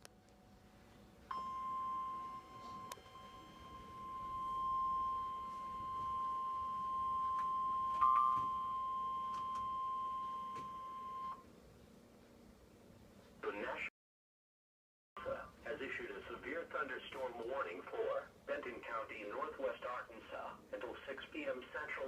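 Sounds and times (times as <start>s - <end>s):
high-pitched warning alarm tone: 1.3s - 11.4s.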